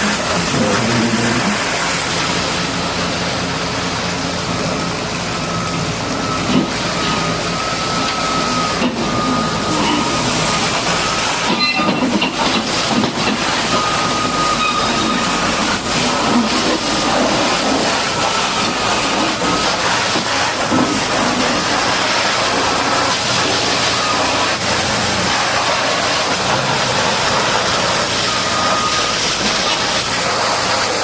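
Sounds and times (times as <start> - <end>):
high-pressure water spray hissing: 0.0 - 5.3, 6.5 - 31.0
engine running: 0.0 - 31.0.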